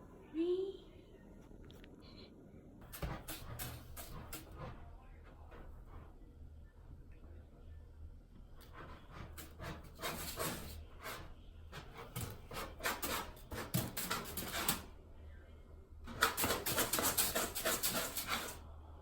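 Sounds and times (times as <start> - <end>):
cat scratching in litter: 2.8 - 6.2, 8.5 - 15.0, 16.0 - 18.6.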